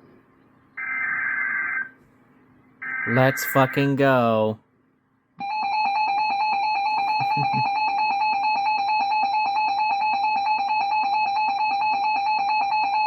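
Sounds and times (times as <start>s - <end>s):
steady two-tone alarm: 2.8s - 4.4s, 5.4s - 13.0s.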